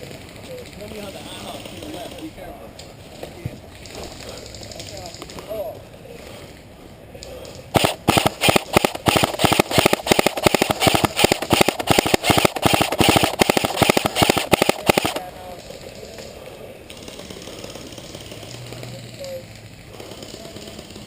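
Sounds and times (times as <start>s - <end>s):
airsoft gun rapid fire: 7.7s - 15.3s, 16.9s - 21.0s.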